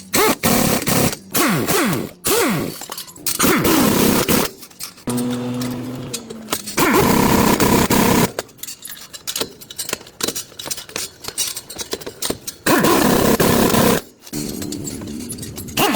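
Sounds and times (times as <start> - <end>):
workshop handling clicks and knocks: 0.0 - 15.9
loud machine noise: 5.1 - 8.4.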